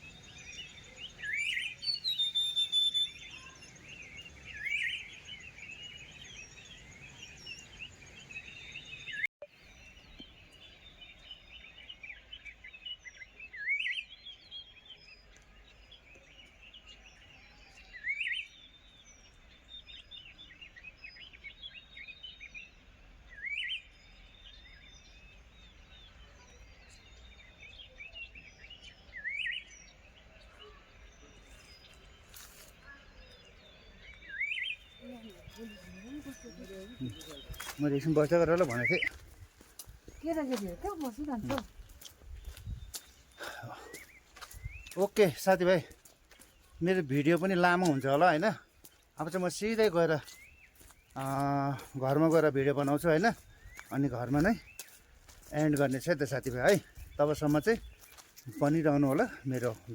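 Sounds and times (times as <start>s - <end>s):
faint small bird chirps: 0.0s - 37.8s
bird upward-sweeping call: 0.2s - 3.8s.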